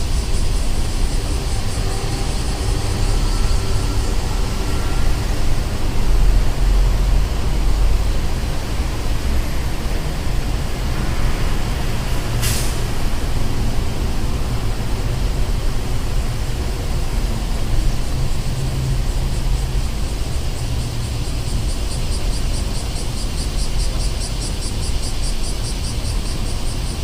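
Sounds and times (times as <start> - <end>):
traffic rumble: 0.0 - 27.0
short sharp hiss: 12.1 - 13.1.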